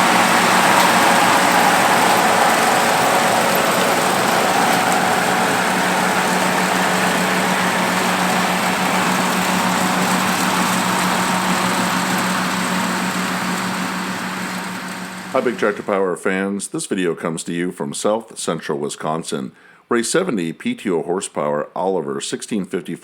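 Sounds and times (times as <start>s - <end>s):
tractor engine droning: 0.0s - 16.0s.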